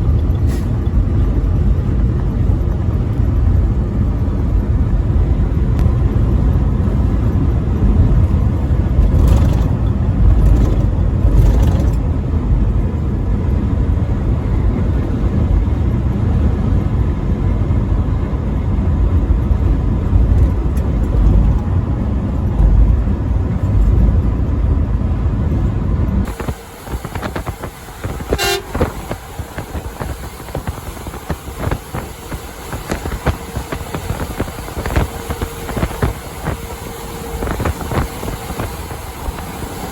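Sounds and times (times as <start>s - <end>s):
truck engine and road rumble: 0.0s - 39.9s
vehicle horn tooting: 28.0s - 29.7s.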